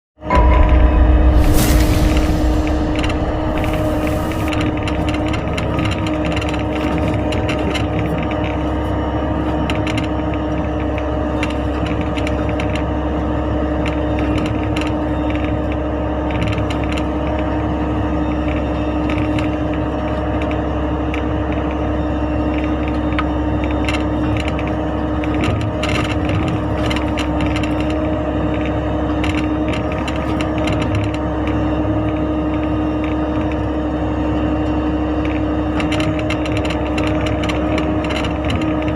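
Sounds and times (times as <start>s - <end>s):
diesel engine running: 0.4s - 8.8s.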